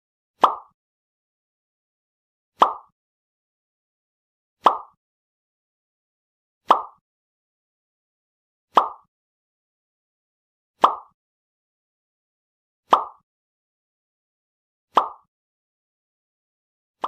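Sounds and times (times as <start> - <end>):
short sharp pop: 0.4 - 0.8, 2.6 - 2.9, 4.6 - 5.0.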